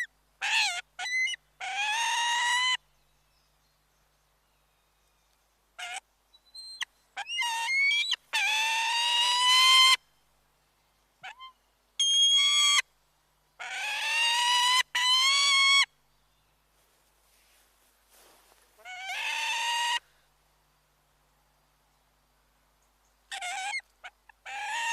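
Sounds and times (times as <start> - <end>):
long rising bird calls: 18.7 - 20.2.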